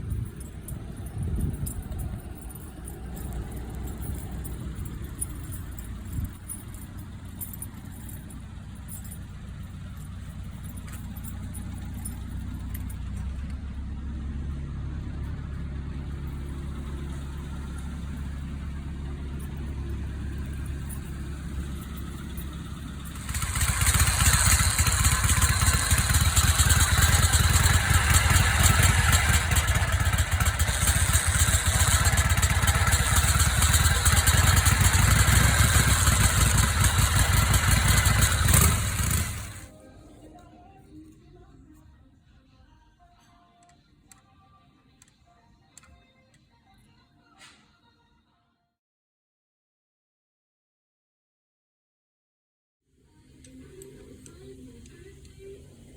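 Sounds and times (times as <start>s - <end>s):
motorcycle engine rumbling: 0.0s - 39.8s.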